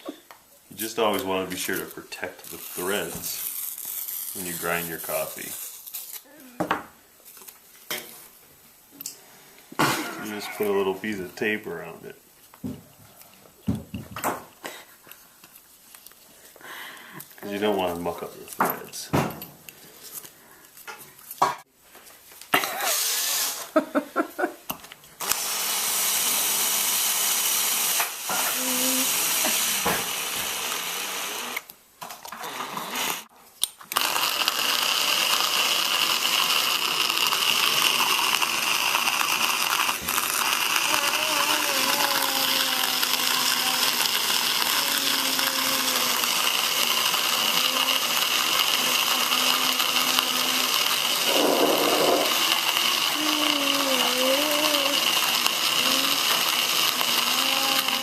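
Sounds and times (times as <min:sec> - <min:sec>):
drill driving coffee grinder: 0:01.7 - 0:06.2, 0:10.2 - 0:12.0, 0:22.6 - 0:23.8, 0:25.2 - 0:33.3, 0:33.9 - 0:58.0.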